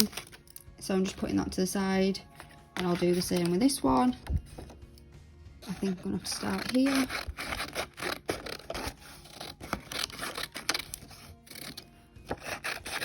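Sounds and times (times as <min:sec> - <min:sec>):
scissors snipping paper: 0:06.2 - 0:13.0.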